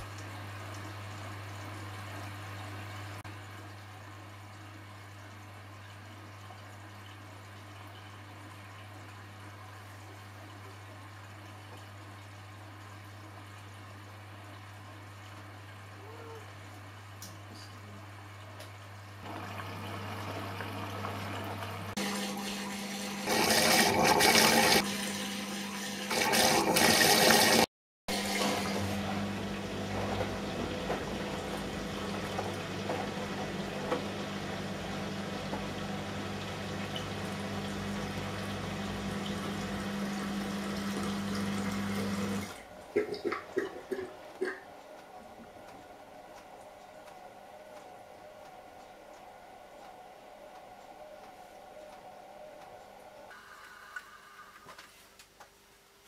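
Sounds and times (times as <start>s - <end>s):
washing machine hum: 0.0s - 55.1s
water sloshing in washing machine: 19.2s - 47.2s.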